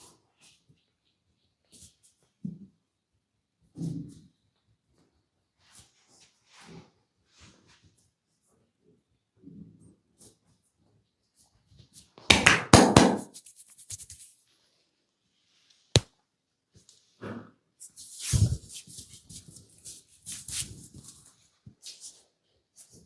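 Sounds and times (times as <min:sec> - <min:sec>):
hands rubbing and crackling: 0:11.8 - 0:14.5, 0:17.8 - 0:23.0.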